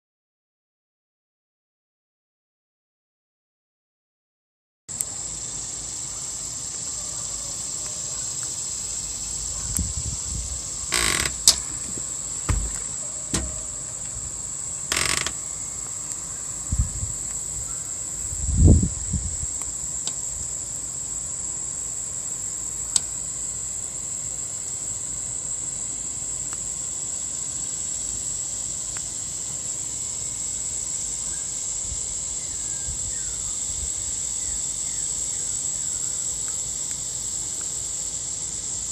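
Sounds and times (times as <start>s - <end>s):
insect chorus trilling: 4.9s - 38.9s
camera handling knocks: 12.5s - 13.6s.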